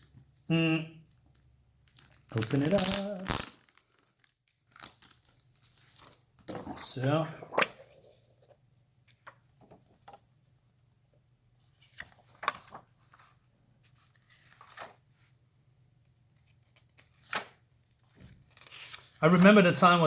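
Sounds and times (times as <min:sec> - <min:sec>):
comic book rustling in plastic bag: 0:01.9 - 0:06.5.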